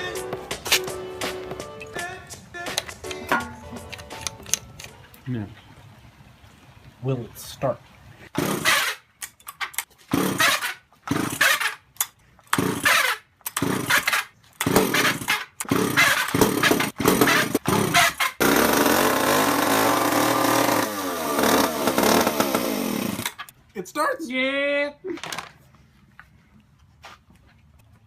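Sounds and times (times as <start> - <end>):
chainsaw starter cord pulls: 8.4 - 23.5
chainsaw engine running: 10.1 - 11.6, 12.5 - 23.4.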